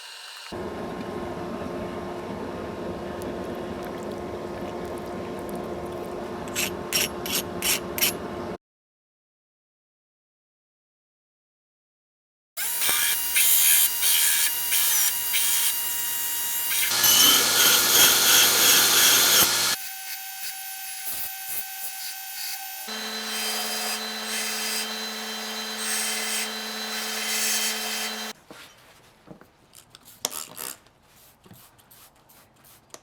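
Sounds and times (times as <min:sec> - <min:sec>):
grinder grinding steel: 0:06.1 - 0:08.6, 0:12.6 - 0:28.4.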